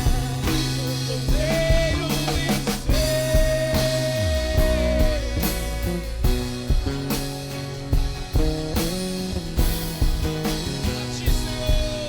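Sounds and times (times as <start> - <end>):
people singing praise song: 0.0 - 6.9, 10.8 - 12.0
worship band playing: 0.0 - 12.0.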